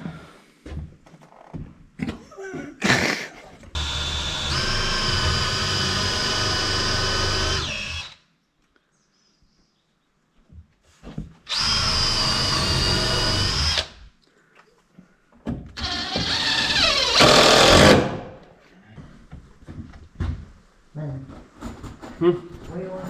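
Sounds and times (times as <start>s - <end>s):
power drill whining: 3.8s - 8.2s, 11.5s - 14.0s, 15.8s - 18.2s.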